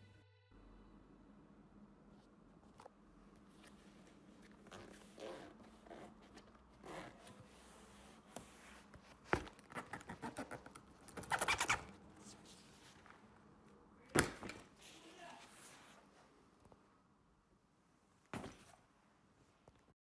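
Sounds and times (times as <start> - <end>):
zipper rasping: 4.4 - 8.8, 9.5 - 12.0.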